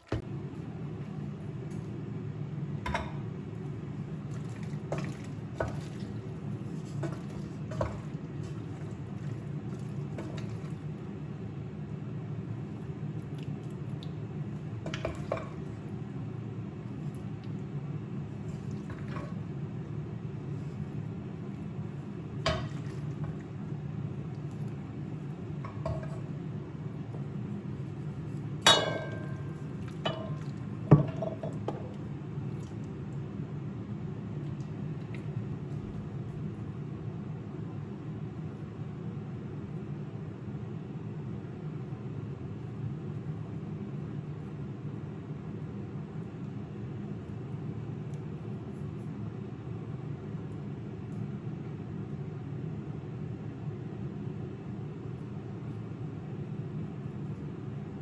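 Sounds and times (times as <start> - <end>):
dishes and cutlery clinking: 28.7 - 31.7.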